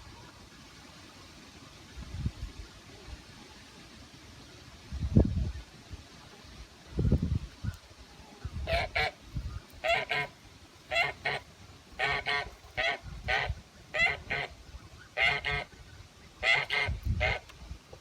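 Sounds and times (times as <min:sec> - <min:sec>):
geese honking: 0:08.7 - 0:09.2, 0:09.8 - 0:17.5.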